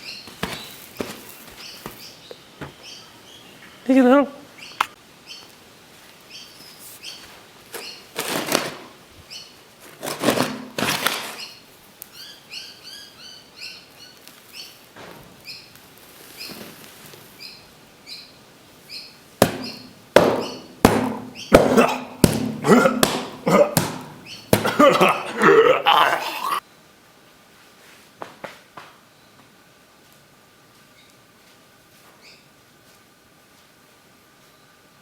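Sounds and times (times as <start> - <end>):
small birds chirping: 0.0 - 5.6, 6.2 - 8.1, 9.2 - 9.6, 11.3 - 14.8, 15.4 - 22.2, 24.2 - 24.6
short scraping noises: 9.9 - 11.5.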